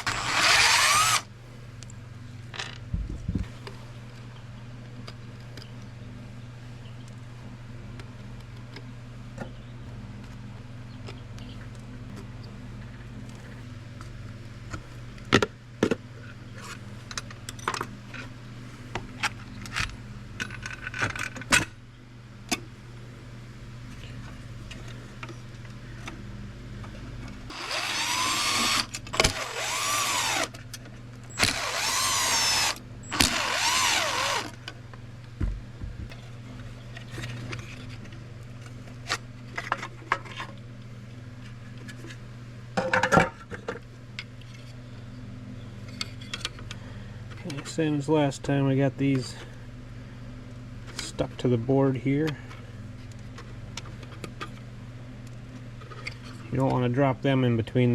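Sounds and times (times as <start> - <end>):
electric screwdriver whining: 0.0 - 1.3, 27.5 - 30.6, 31.3 - 34.6
low hum: 9.1 - 38.7.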